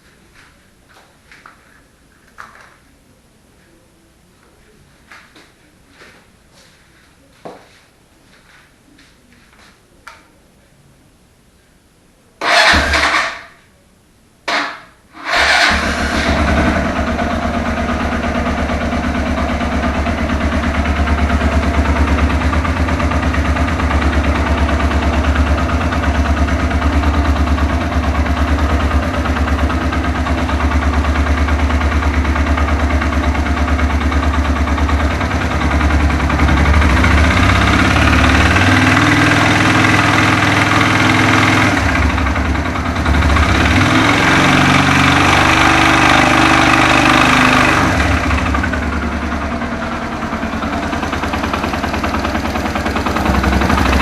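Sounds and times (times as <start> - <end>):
motorcycle engine starting and idling: 12.4 - 13.6, 14.5 - 54.0.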